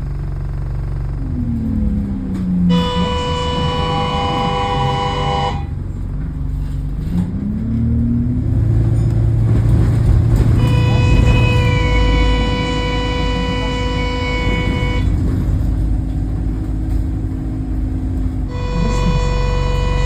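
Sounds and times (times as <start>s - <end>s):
droning tone with overtones: 0.0s - 6.0s, 17.4s - 20.0s
bus engine: 0.0s - 20.0s.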